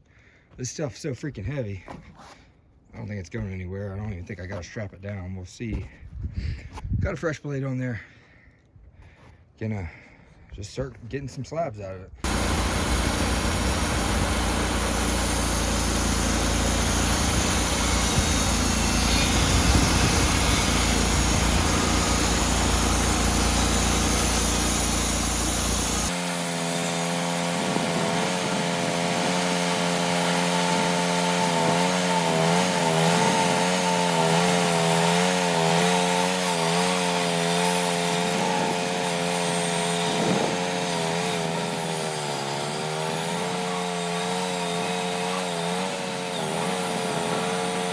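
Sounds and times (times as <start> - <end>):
band saw cutting log: 12.2 - 47.9
wavering engine tone: 12.3 - 28.4.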